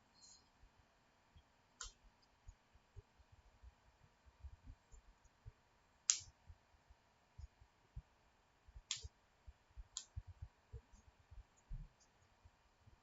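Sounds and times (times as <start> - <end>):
sharp clicks: 6.1 - 6.3, 8.9 - 9.1.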